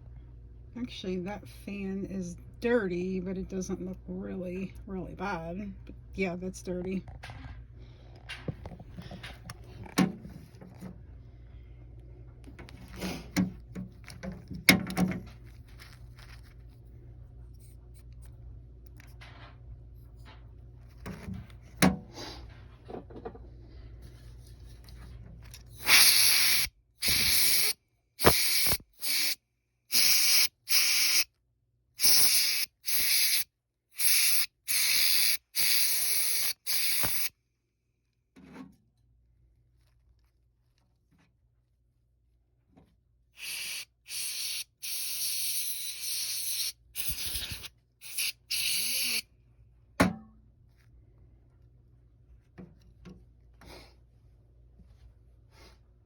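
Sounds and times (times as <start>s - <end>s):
parts knocking and clicking: 12.4s - 15.4s
pressurised spray hissing: 25.8s - 31.3s, 32.0s - 33.4s, 34.0s - 37.3s, 43.4s - 49.2s.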